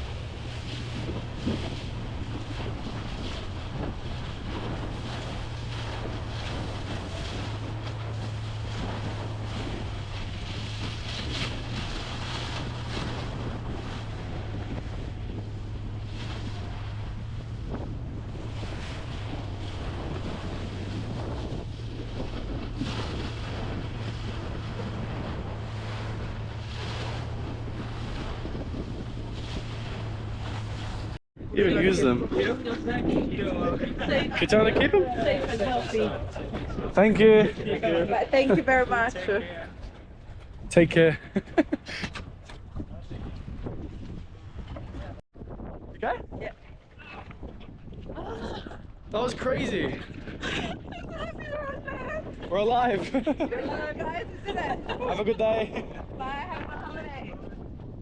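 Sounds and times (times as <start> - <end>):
boat engine humming: 0.0 - 58.0
waves washing around hull: 0.0 - 58.0
wind buffeting microphone: 0.0 - 58.0.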